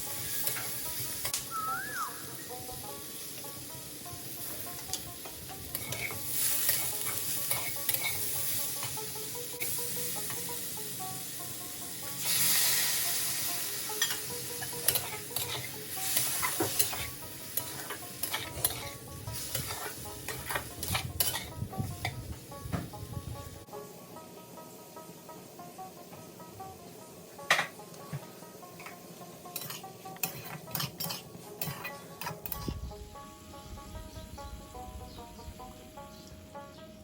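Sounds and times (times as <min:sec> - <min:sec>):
food sizzling in a pan: 0:00.0 - 0:36.2
spatula knocking and scraping pan: 0:14.9 - 0:21.5, 0:29.6 - 0:32.6.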